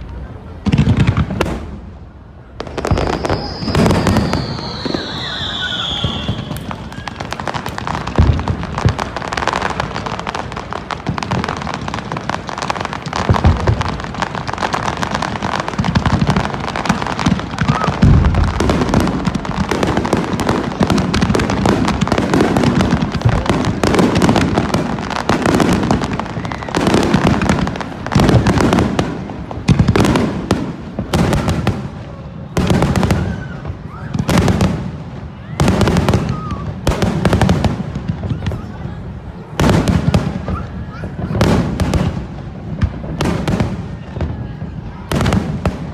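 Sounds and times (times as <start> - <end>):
fireworks bursting: 0.0 - 45.9
fireworks whistle falling: 2.7 - 7.8.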